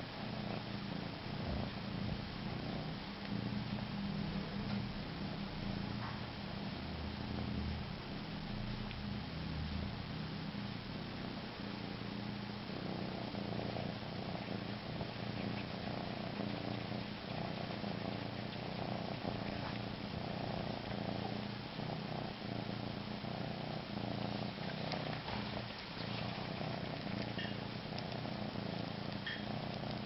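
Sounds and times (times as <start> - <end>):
cat purring: 0.0 - 30.0.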